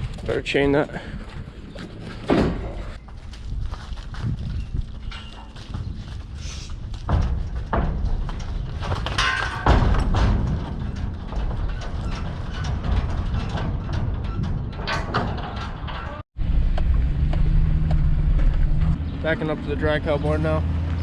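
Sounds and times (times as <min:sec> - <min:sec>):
steady low rumble: 0:00.0 - 0:21.0
metal clanks and thumps: 0:01.8 - 0:03.1, 0:04.4 - 0:19.1
sharp knocks and bangs: 0:06.7 - 0:19.5.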